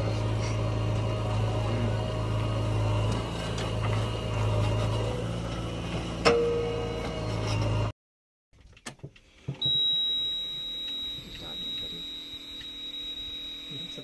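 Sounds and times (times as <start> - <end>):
diesel engine droning: 0.0 - 7.9.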